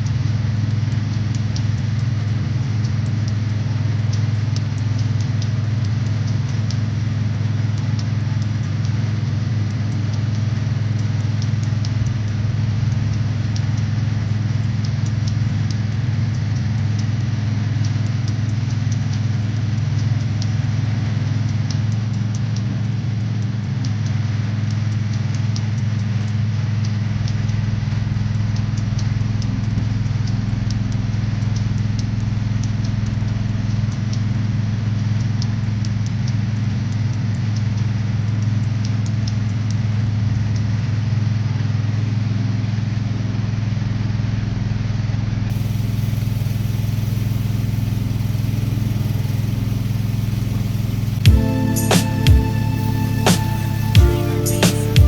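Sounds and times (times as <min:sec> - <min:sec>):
motor humming: 0:45.5 - 0:55.0.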